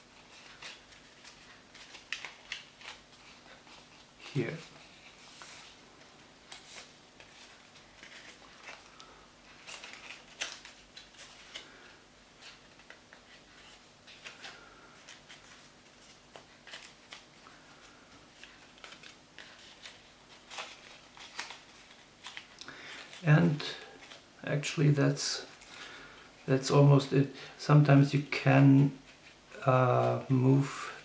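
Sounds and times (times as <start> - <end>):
paper rustling and crackling: 0.0 - 24.8.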